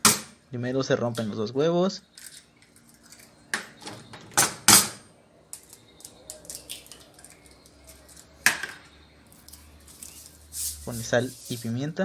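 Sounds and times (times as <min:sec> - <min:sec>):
eggshells cracking against edge: 0:05.6 - 0:08.3.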